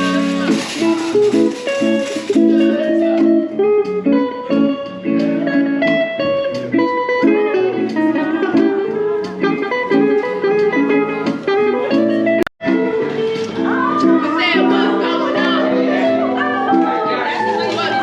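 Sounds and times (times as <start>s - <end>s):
guitar playing: 0.0s - 18.0s.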